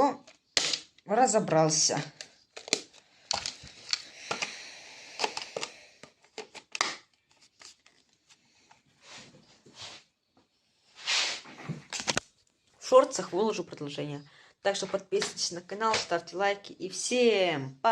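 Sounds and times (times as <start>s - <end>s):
rustling and crinkling: 0.2s - 4.6s, 5.2s - 13.6s
plastic parts clicking: 2.1s - 4.6s, 5.2s - 8.1s.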